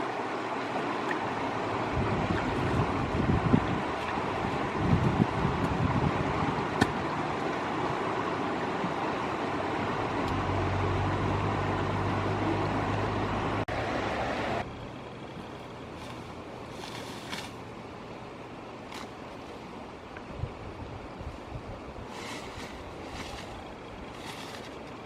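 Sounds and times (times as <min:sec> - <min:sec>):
river water rushing: 0:00.0 - 0:14.7.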